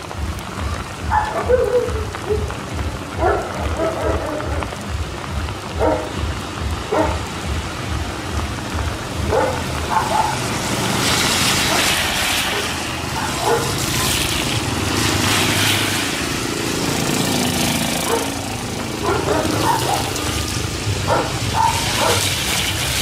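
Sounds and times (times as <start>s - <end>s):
steady rain hiss: 0.0s - 23.0s
dog barking: 1.1s - 2.5s, 3.2s - 4.7s, 5.8s - 6.2s, 6.9s - 7.2s, 9.2s - 10.5s, 11.6s - 14.2s, 18.0s - 18.4s, 19.0s - 20.3s, 21.0s - 22.4s.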